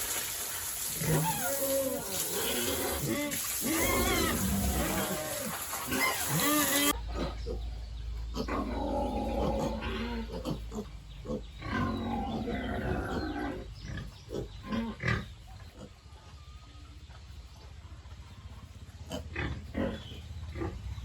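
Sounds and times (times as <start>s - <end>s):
pigs squealing: 0.9s - 7.6s, 8.3s - 16.1s, 18.9s - 20.8s.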